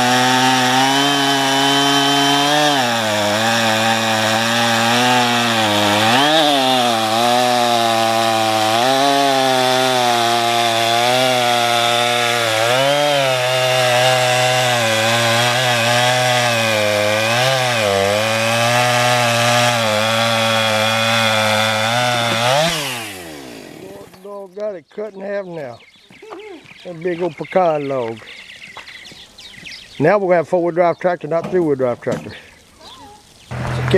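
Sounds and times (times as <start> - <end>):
chainsaw cutting log: 0.0 - 24.2, 33.5 - 33.9.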